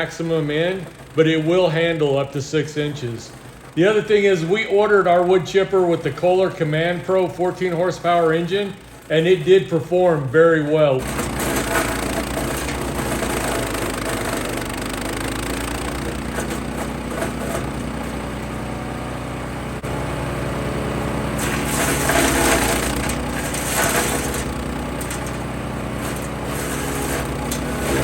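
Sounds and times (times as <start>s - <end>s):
wood chipper engine running: 0.0s - 28.0s
wood being chipped: 11.0s - 18.6s, 21.2s - 28.0s.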